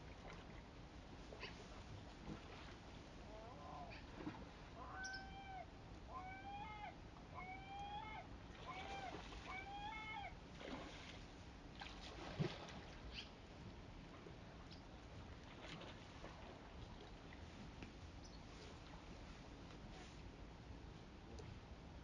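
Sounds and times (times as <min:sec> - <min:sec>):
bird mewing calls: 0:04.8 - 0:10.4.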